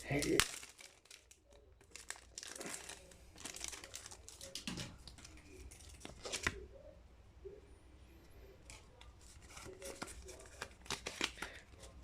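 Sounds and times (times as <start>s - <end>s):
foil wrapper tearing and crinkling: 0.0s - 6.6s, 9.2s - 12.0s.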